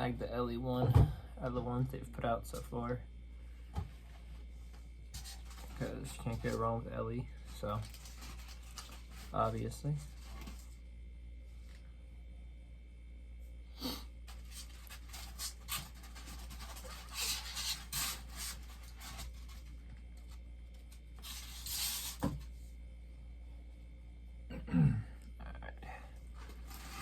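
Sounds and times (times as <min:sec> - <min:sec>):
steady low hum: 0:00.0 - 0:27.0
packaging rubbing and scraping: 0:05.2 - 0:06.6, 0:07.5 - 0:10.7, 0:14.3 - 0:19.8, 0:21.2 - 0:22.5, 0:26.4 - 0:27.0.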